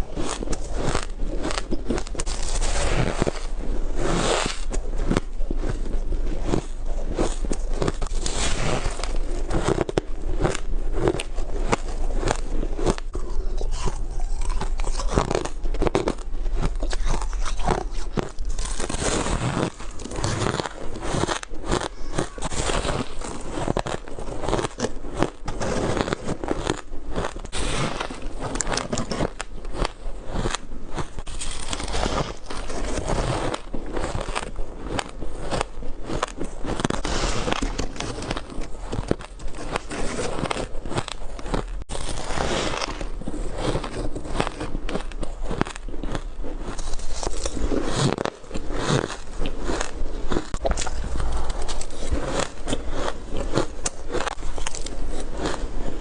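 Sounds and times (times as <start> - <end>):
ice being chewed and crunched: 0.0 - 56.0.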